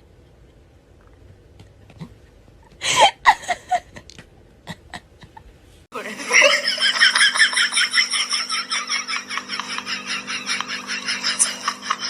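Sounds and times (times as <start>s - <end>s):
steady hum: 0.0s - 12.0s
person laughing: 2.8s - 4.1s, 6.0s - 12.0s.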